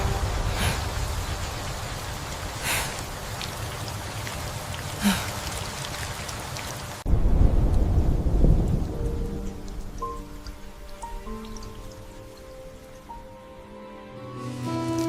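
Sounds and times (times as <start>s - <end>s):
heavy rain: 0.0s - 15.0s
low thunder-like rumble: 7.1s - 10.4s.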